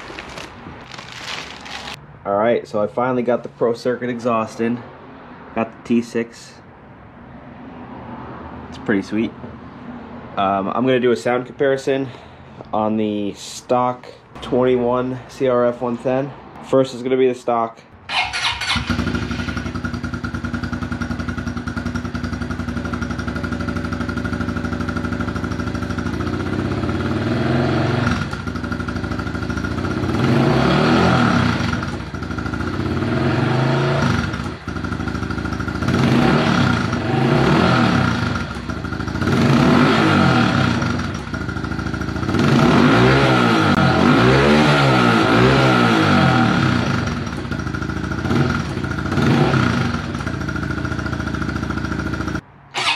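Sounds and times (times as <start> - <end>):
motorcycle engine idling and revving: 0.0 - 2.0, 18.0 - 52.9.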